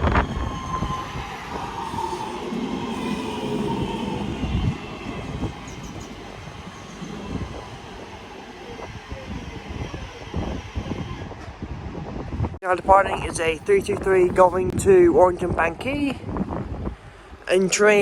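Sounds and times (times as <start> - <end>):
electric train traction whine: 0.0 - 11.8
train rumble with knocks: 0.0 - 14.8.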